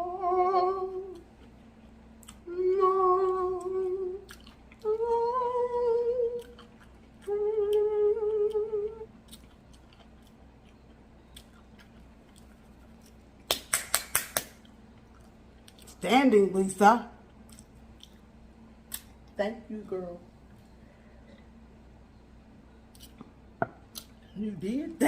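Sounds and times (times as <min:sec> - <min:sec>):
woman humming while eating: 0:00.0 - 0:01.3, 0:02.3 - 0:09.2.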